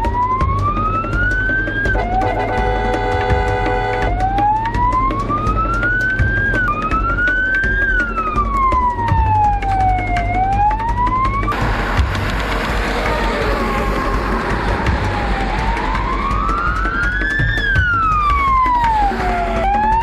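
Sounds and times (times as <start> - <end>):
emergency vehicle siren wailing: 0.0 - 20.0
rushing noise: 11.5 - 19.8
low engine rumble: 11.5 - 19.9.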